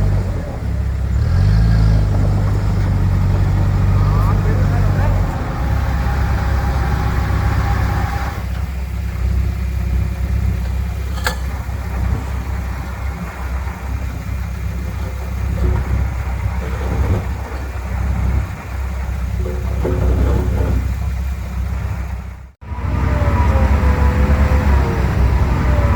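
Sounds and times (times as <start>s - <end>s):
heavy diesel engine rumbling: 0.0s - 25.9s.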